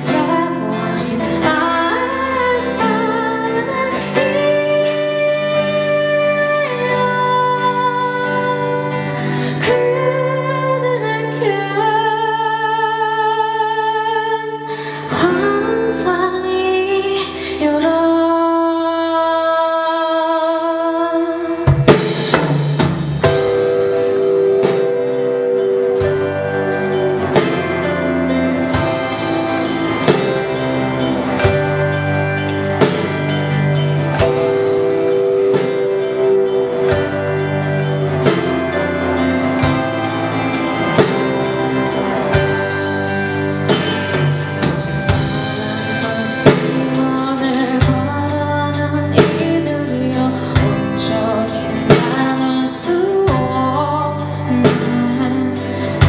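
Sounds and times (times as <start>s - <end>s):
bass: 0.0s - 56.0s
guitar: 0.0s - 56.0s
person singing: 0.0s - 56.0s
drum kit beat: 21.6s - 56.0s.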